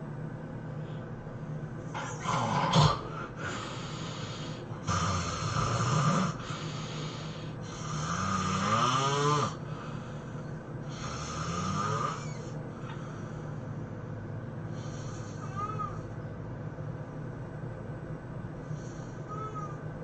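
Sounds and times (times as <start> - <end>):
person snoring heavily: 2.0 - 13.2.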